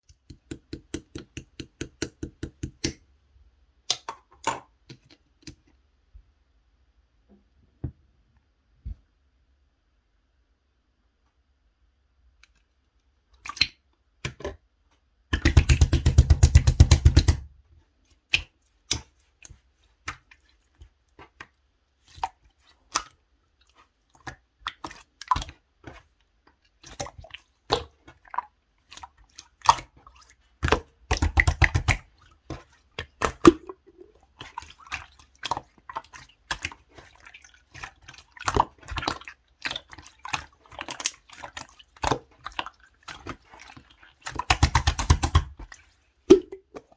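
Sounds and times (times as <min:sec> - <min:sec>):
quick popping of slime: 0:15.3 - 0:17.5, 0:44.5 - 0:45.6
slime sticky clicks and pops: 0:44.5 - 0:45.5.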